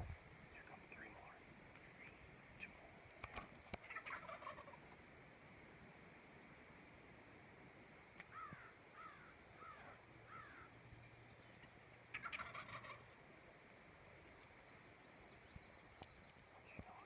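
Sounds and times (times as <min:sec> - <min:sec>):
turkey gobbling: 0:03.7 - 0:05.0, 0:12.1 - 0:13.2
turkey yelps: 0:03.8 - 0:04.8, 0:12.1 - 0:13.1.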